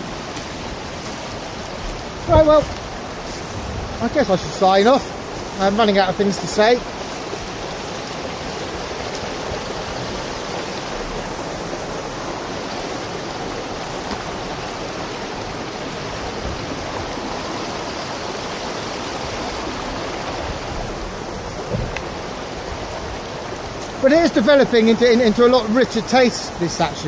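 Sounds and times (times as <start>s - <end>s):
rush of running water: 0.0s - 27.0s.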